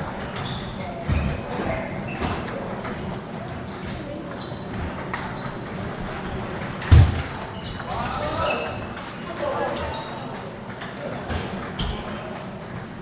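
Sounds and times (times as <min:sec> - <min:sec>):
faint voices: 0:00.0 - 0:13.0
table tennis balls clicking: 0:00.0 - 0:13.0.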